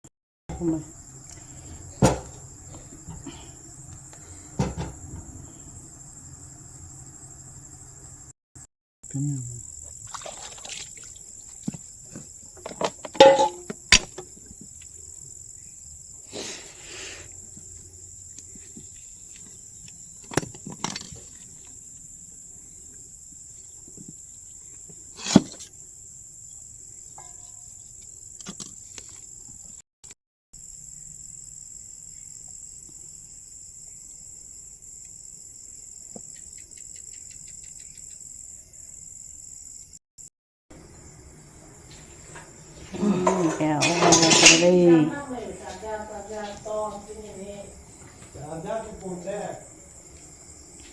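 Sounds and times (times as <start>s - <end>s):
knocks and clatters: 0.5s - 5.8s, 12.6s - 14.3s
high-pitched insect drone: 0.5s - 8.3s.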